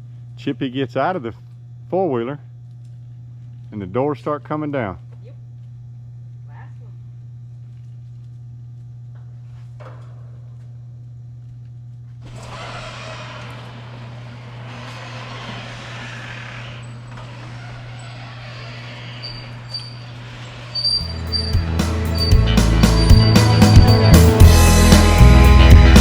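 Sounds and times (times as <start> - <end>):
roll-up door coming down: 12.2 - 24.4
loud music: 21.2 - 26.0.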